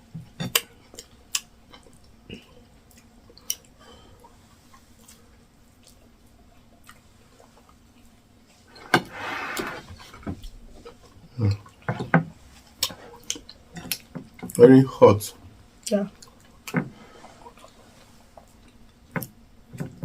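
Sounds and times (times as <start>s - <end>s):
slurp: 8.7s - 9.9s.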